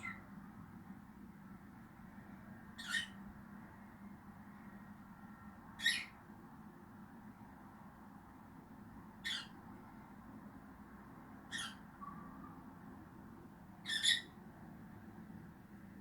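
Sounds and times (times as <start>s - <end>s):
lovebird short high calls: 13.9s - 14.3s.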